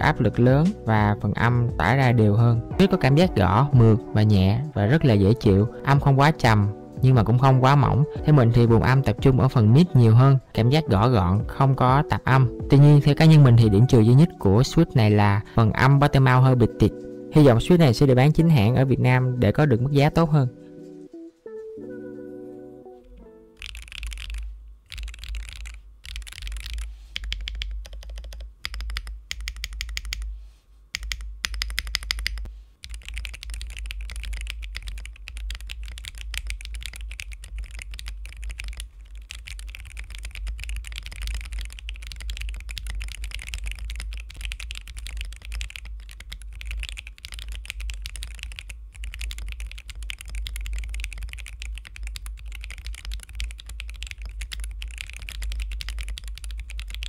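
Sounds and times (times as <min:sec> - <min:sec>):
mechanical keyboard typing: 0:23.6 - 0:30.3, 0:31.0 - 0:57.0.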